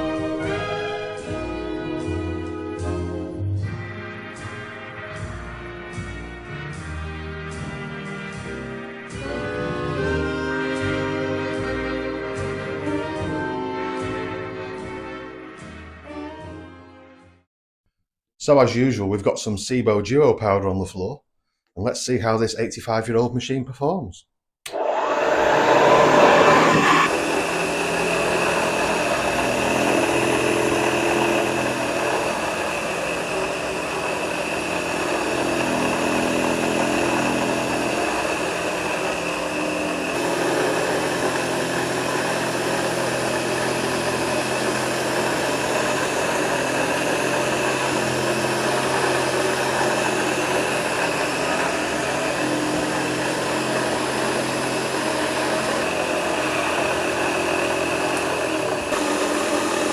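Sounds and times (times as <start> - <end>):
vacuum cleaner running: 0.0 - 3.1, 9.2 - 15.5, 24.7 - 59.9.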